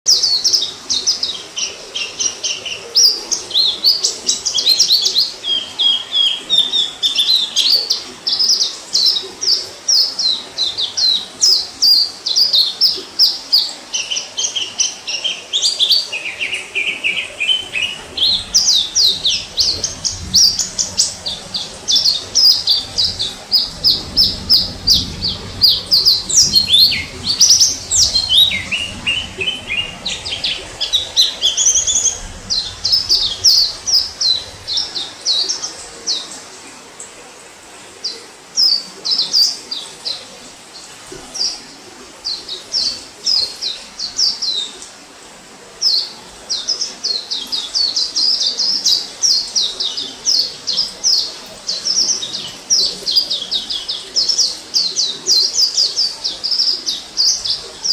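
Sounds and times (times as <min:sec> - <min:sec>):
bird chirping and twittering: 0:00.1 - 0:36.4.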